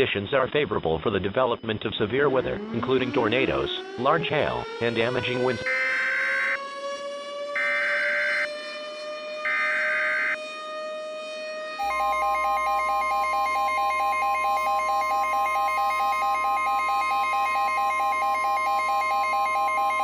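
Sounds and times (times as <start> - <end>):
emergency alert data burst: 2.2 - 6.7, 7.6 - 10.5, 11.8 - 20.0
loud steady alert tone: 2.4 - 6.7, 7.6 - 8.7, 9.4 - 10.4, 11.8 - 20.0
rapidly pulsing tone: 9.5 - 10.4.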